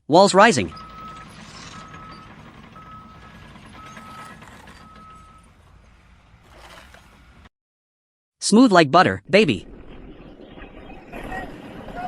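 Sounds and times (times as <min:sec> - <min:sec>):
reversing alarm beeping: 0:00.7 - 0:05.6
low engine rumble: 0:00.7 - 0:07.5.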